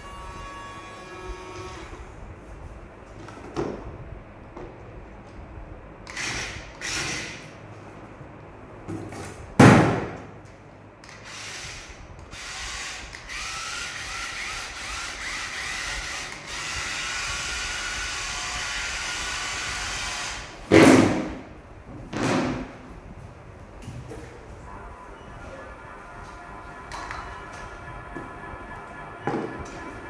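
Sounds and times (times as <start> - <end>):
toy truck electric motor whirring: 11.1 - 20.6.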